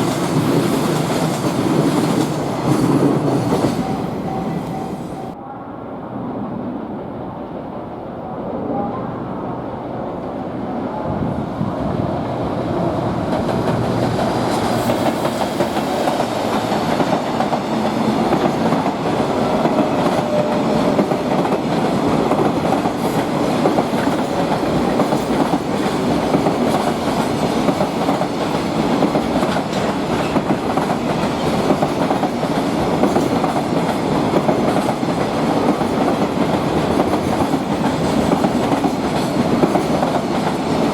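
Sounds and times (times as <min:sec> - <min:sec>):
train wheels clicking on rails: 0:00.0 - 0:04.0, 0:12.3 - 0:40.9
freight train rumbling past: 0:00.0 - 0:40.9.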